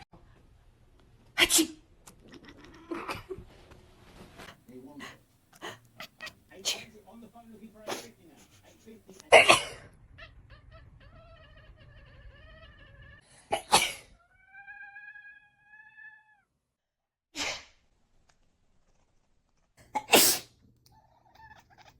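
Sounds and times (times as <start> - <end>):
cat sneezing: 1.4 - 1.8, 9.3 - 9.9, 13.5 - 14.2, 17.4 - 17.8, 20.0 - 20.6
cat meowing: 2.2 - 3.3, 5.6 - 6.4, 10.0 - 13.3, 14.1 - 16.5, 20.9 - 21.9.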